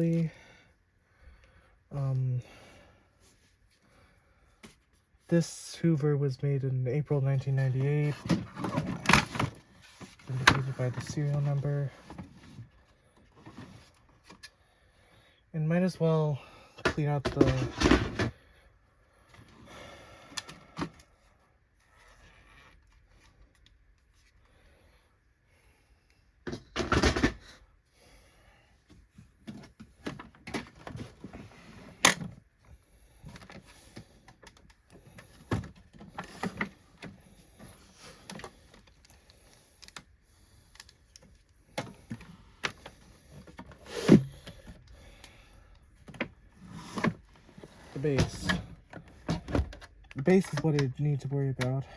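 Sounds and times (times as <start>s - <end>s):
plastic vacuum parts being handled: 7.8s - 14.5s, 16.8s - 18.4s, 26.4s - 27.5s, 28.9s - 32.5s, 33.2s - 40.1s, 40.7s - 51.8s.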